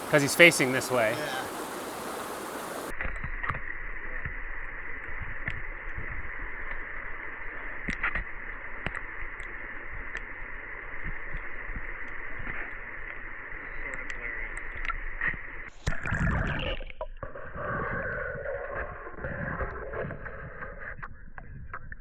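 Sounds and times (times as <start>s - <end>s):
water churning: 0.0s - 2.9s
muffled underwater creek rush: 0.0s - 22.0s
small clicks and ticks: 5.0s - 17.9s.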